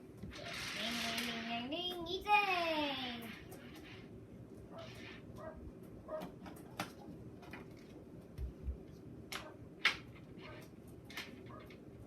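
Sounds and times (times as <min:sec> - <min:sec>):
toy pieces clicking together: 0:00.4 - 0:01.5.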